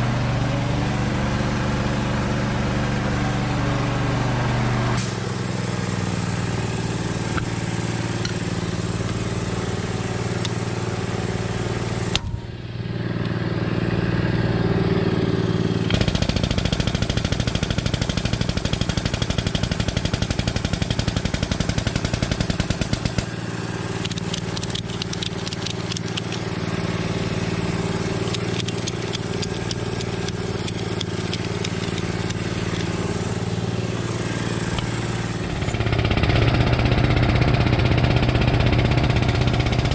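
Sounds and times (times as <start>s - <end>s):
motor running: 14.3s - 39.9s.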